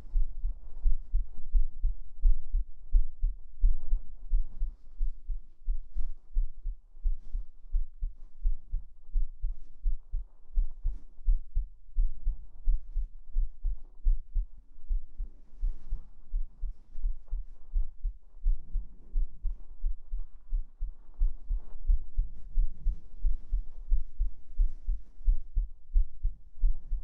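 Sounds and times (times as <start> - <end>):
heartbeat thumps: 0.0 - 27.0
soft fabric rustling: 12.4 - 27.0.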